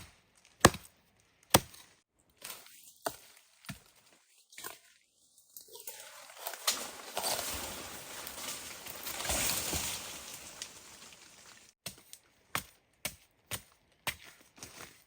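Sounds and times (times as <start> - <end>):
chopping into wood: 0.0 - 0.9, 1.5 - 1.9
long rustling: 5.9 - 11.8.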